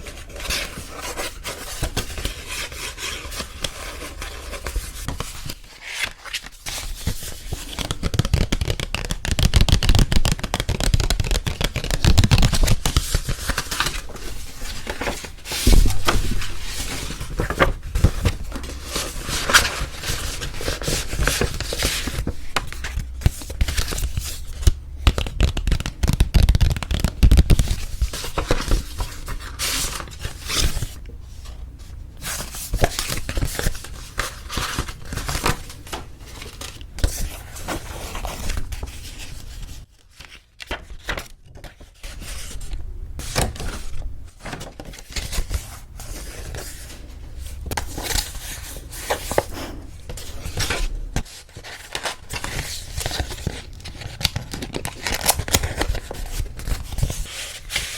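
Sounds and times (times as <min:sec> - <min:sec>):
stiff paper rustling: 0:00.0 - 0:31.0, 0:31.6 - 0:57.9.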